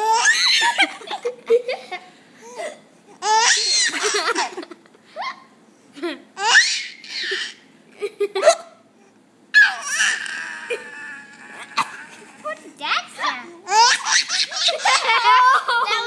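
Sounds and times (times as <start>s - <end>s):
baby laughing and squealing: 0.0s - 1.3s, 3.2s - 4.6s, 6.4s - 7.6s, 9.6s - 12.6s, 13.7s - 15.7s.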